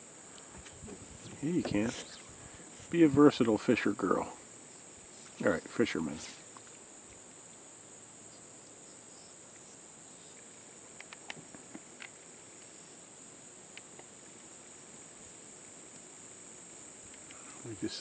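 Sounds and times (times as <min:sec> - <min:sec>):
insect chorus drone: 0:00.0 - 0:18.0
faint clicks: 0:00.3 - 0:02.2, 0:10.3 - 0:12.7, 0:13.7 - 0:14.5, 0:17.0 - 0:17.7.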